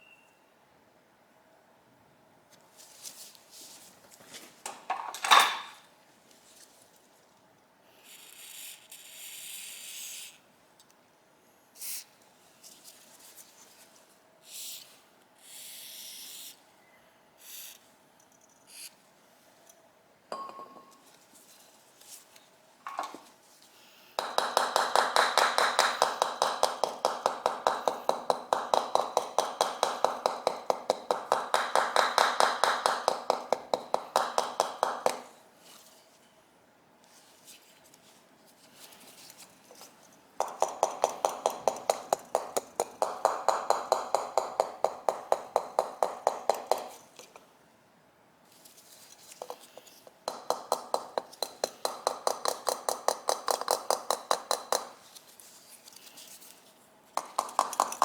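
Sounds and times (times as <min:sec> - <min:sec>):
rapid tapping on metal: 0:24.2 - 0:35.2, 0:40.4 - 0:46.9, 0:50.3 - 0:54.9, 0:57.2 - 0:58.0.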